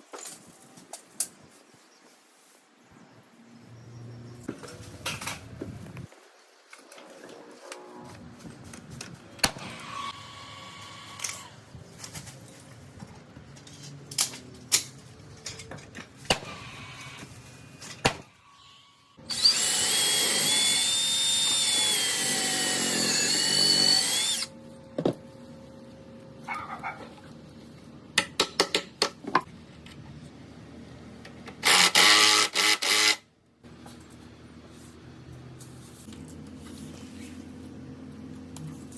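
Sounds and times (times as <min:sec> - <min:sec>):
power drill running: 0:19.2 - 0:24.5, 0:31.6 - 0:33.2.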